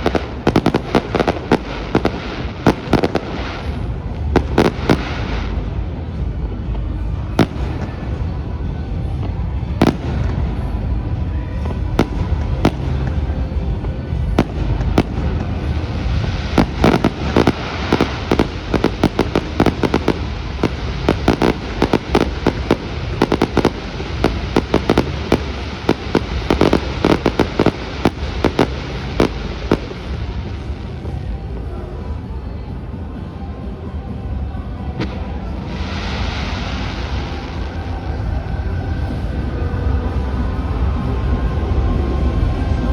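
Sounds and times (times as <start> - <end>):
fireworks bangs and cracks: 0.0 - 32.3.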